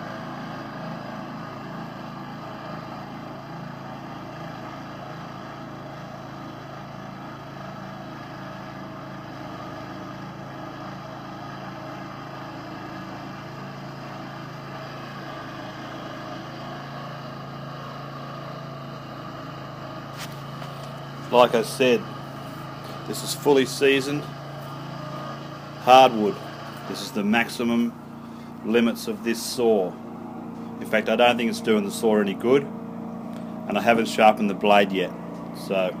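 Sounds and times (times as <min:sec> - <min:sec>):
sawmill motor under heavy load: 0:00.0 - 0:36.0
saw cutting hardwood: 0:20.0 - 0:32.8.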